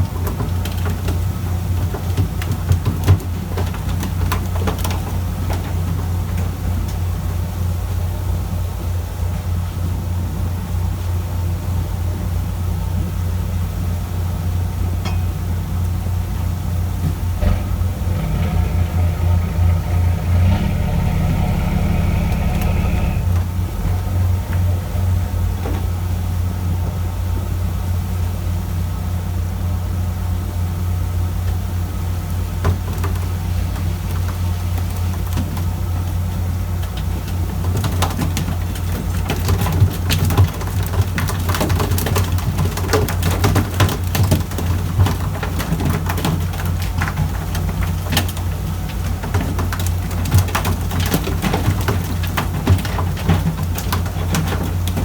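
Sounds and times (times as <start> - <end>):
clicking and rattling: 0.0 - 7.0, 32.6 - 55.0
boat engine droning: 15.6 - 28.4.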